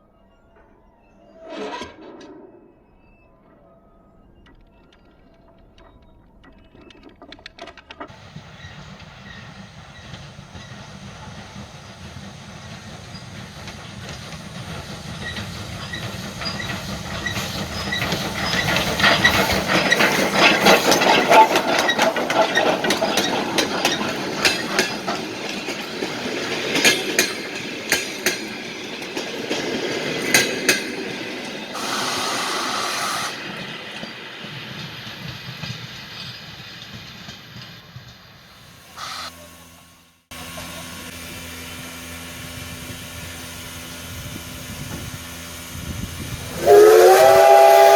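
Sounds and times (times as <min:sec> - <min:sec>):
steam locomotive running gear squeaking: 0:00.1 - 0:39.7
steam hiss: 0:08.1 - 0:39.6, 0:40.3 - 0:47.9
wheel clicks over rail joints: 0:13.6 - 0:32.2.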